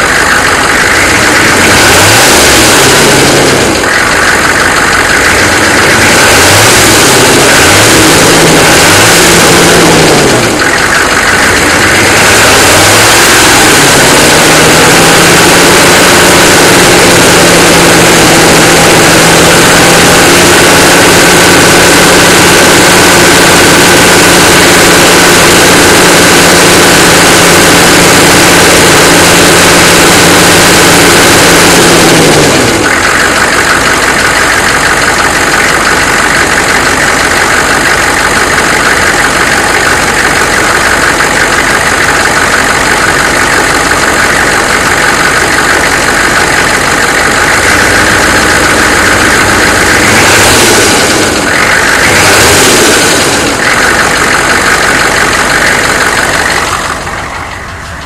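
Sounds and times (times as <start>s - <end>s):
diesel engine revving: 0.0s - 58.0s.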